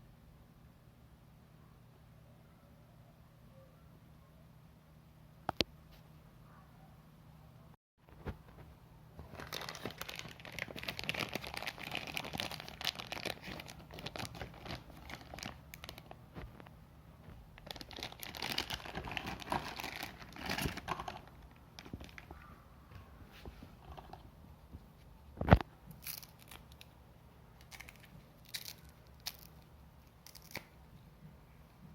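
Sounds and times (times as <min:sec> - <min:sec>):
plastic packaging crinkling: 0:09.2 - 0:16.7, 0:17.5 - 0:22.4, 0:25.4 - 0:26.9, 0:27.6 - 0:29.6.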